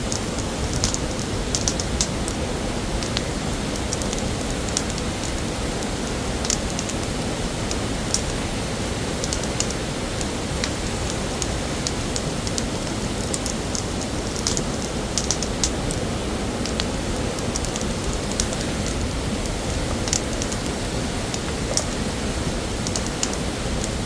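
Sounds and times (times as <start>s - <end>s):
sharp crackles and clicks: 0.0s - 8.5s, 9.1s - 24.0s
waterfall rushing: 0.0s - 24.0s.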